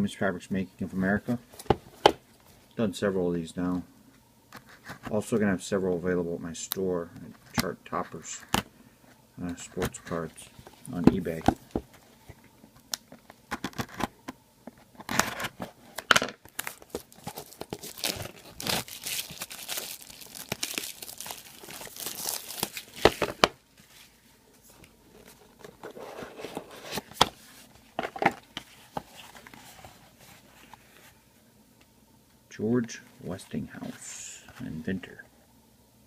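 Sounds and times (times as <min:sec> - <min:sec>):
cards rustling and clicking: 0:15.0 - 0:23.5
plastic wrapper crinkling: 0:16.4 - 0:23.4.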